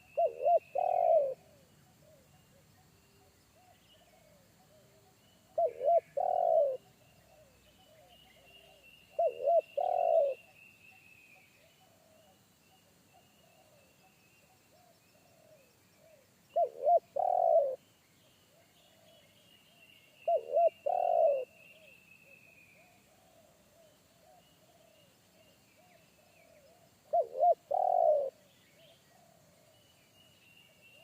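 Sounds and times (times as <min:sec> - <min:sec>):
dove cooing: 0:00.0 - 0:02.6, 0:03.6 - 0:08.1, 0:08.7 - 0:10.4, 0:15.2 - 0:17.8, 0:20.3 - 0:21.5, 0:26.5 - 0:28.4.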